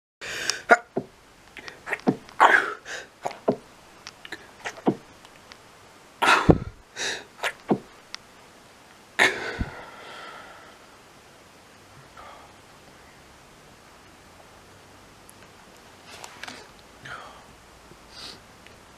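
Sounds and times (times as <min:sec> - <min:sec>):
person sneezing: 0:00.4 - 0:01.0, 0:01.6 - 0:03.5, 0:06.2 - 0:07.8, 0:09.2 - 0:09.8.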